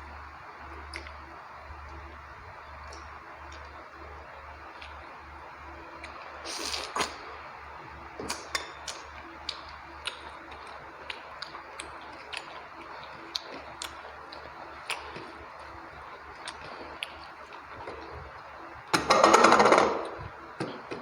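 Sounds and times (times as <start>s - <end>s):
person chewing food: 0.7s - 1.3s, 6.0s - 7.3s, 8.2s - 18.9s.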